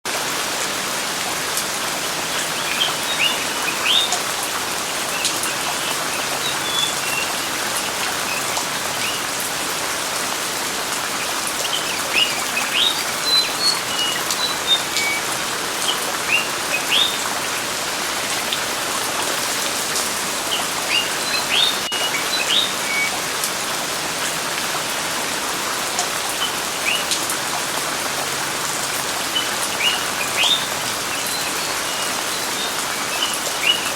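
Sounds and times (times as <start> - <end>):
steady rain: 0.1 - 33.9
birds chirping: 2.2 - 9.5, 11.2 - 17.6, 19.3 - 23.2, 29.2 - 33.9.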